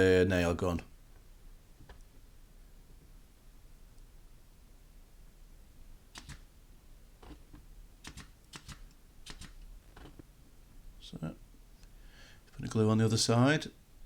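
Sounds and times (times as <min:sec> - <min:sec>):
air nail gun firing into wood: 0:08.0 - 0:09.6.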